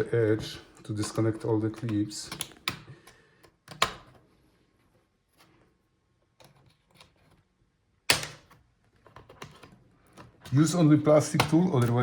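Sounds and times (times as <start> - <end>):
faint plastic clicks and scrapes: 0.4 - 4.2.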